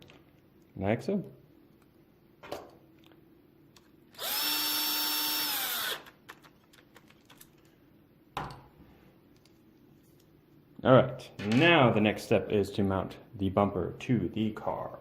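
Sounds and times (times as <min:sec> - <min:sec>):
cordless screwdriver driving screw: 0:04.1 - 0:06.2.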